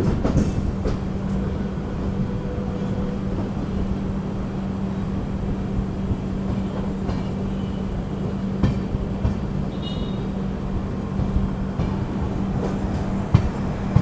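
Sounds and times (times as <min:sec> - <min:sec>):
train wheel clacks: 0:00.0 - 0:02.2, 0:06.2 - 0:07.6, 0:08.2 - 0:14.0
train rumbling and humming: 0:00.0 - 0:14.0.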